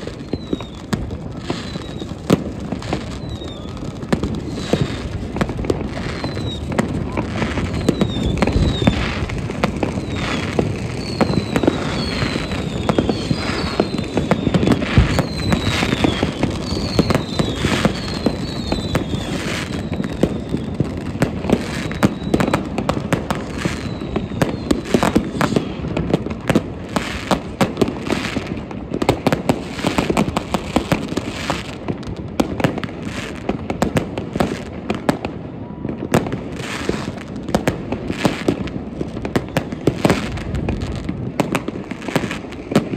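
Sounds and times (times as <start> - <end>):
falling firework whistles: 0.0 - 42.9
fireworks bangs and crackles: 0.0 - 42.9.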